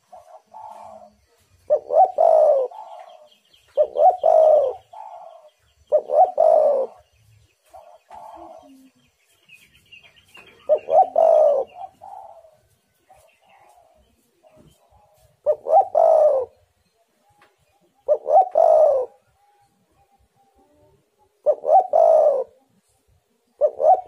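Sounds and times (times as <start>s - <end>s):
dove cooing: 0.0s - 9.1s, 10.3s - 24.0s
small birds chirping: 0.0s - 24.0s.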